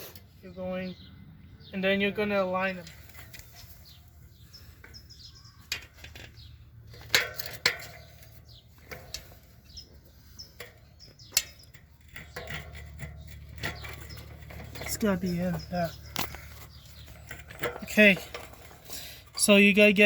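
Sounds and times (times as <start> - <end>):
bicycle wheel clicks and knocks: 4.8 - 19.0.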